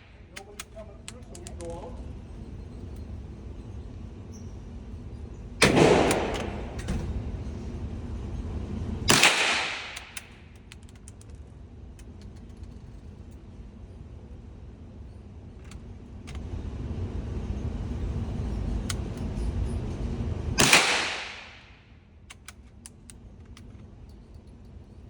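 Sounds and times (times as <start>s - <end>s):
rifle shots with echo: 5.6s - 6.9s, 9.1s - 10.3s, 20.6s - 21.8s.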